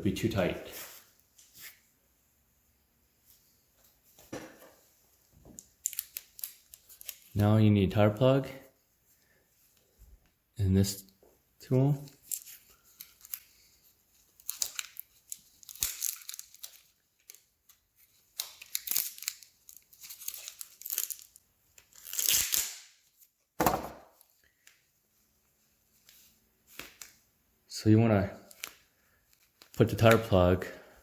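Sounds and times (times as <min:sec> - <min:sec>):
packaging crinkling and tearing: 0:05.7 - 0:07.4, 0:12.1 - 0:23.2.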